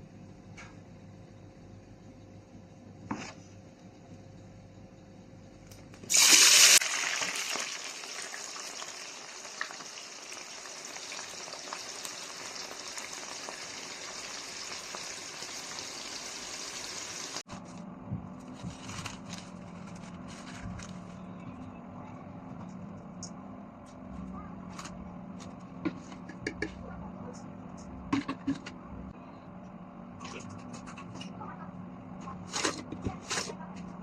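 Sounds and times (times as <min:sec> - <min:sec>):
food frying in hot oil: 0:06.1 - 0:17.5.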